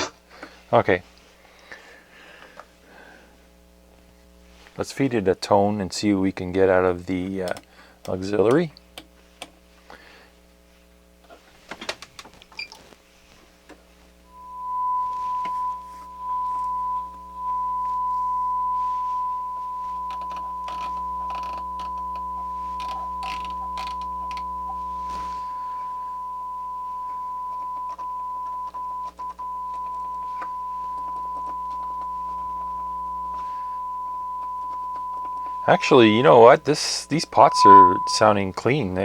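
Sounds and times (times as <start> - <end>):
steady test tone from speaker: 14.2 - 39.0.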